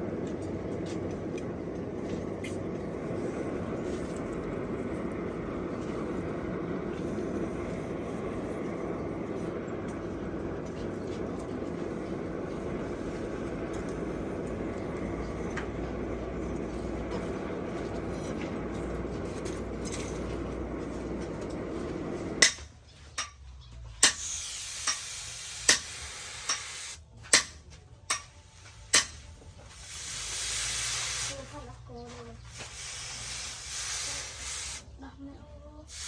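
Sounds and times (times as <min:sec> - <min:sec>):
hammer blows on metal: 0:24.0 - 0:29.4.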